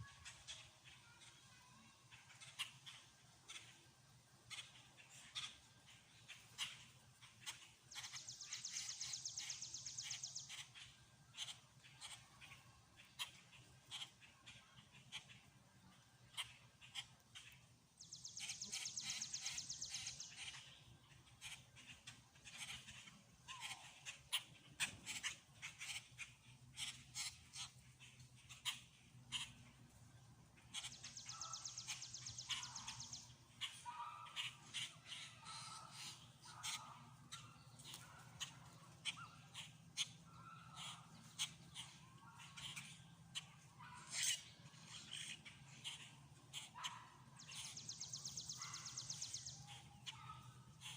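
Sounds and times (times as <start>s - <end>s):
birds chirping: 0.0s - 50.9s
high rapid bird trill: 16.3s - 29.7s, 30.6s - 50.9s.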